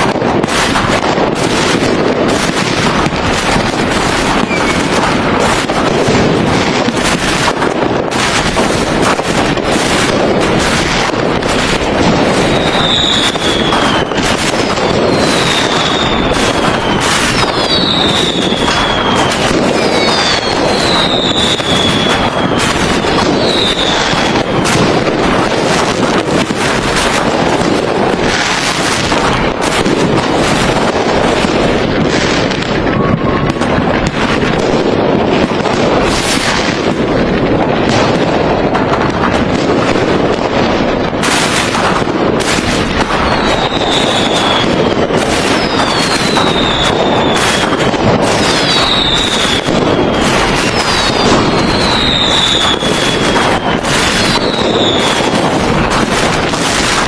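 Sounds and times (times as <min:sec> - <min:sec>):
fireworks bangs and crackling: 0:00.0 - 0:57.0
falling firework whistles: 0:01.4 - 0:27.1, 0:42.4 - 0:57.0.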